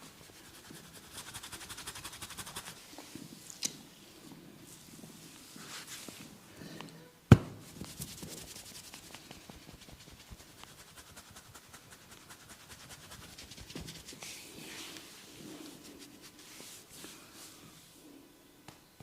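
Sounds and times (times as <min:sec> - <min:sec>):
hands rubbing through hair: 0:07.8 - 0:17.8.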